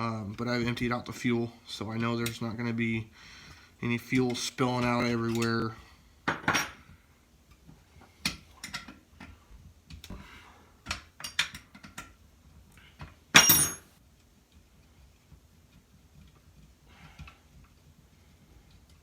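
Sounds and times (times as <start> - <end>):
tools and metal parts clicking: 13.4 - 13.9.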